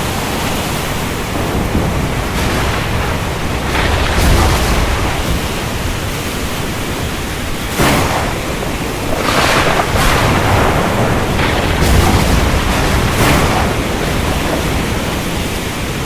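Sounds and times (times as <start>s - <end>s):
heavy rain downpour: 0.0s - 16.0s
low rumble: 1.2s - 15.7s.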